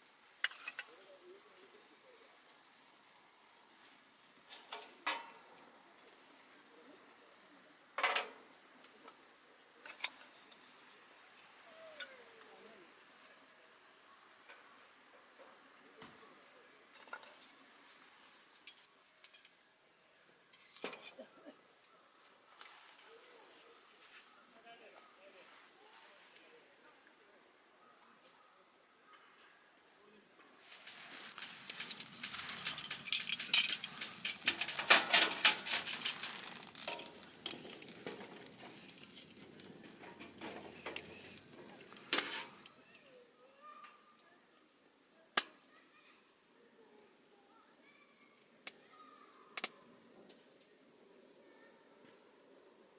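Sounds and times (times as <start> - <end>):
small gear clinking and knocking: 30.6 - 42.7.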